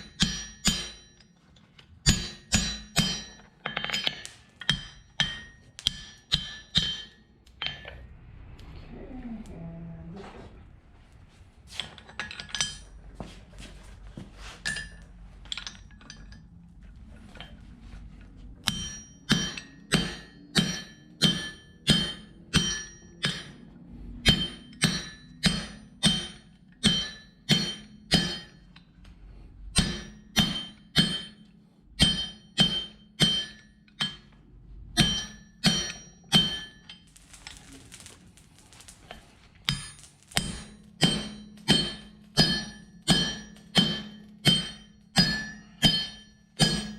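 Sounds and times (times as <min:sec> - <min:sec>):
hammer ringing on anvil: 0:00.0 - 0:01.3, 0:02.1 - 0:07.9, 0:18.6 - 0:28.7, 0:29.8 - 0:34.4, 0:35.0 - 0:37.1, 0:39.7 - 0:46.9.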